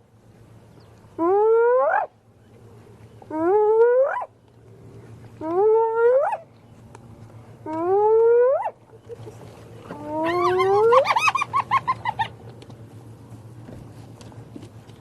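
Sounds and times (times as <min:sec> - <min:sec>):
hyena whooping: 0:10.0 - 0:12.3.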